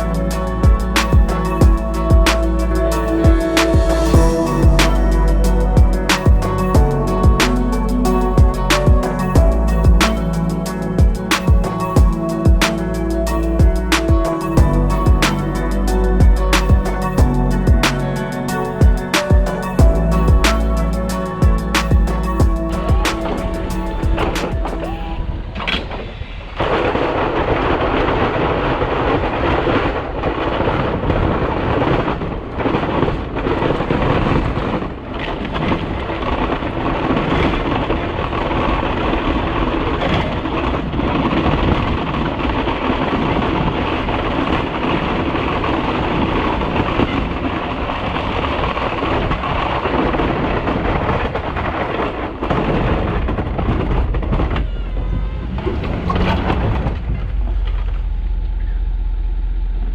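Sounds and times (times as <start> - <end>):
truck engine and road rumble: 53.1 - 59.9.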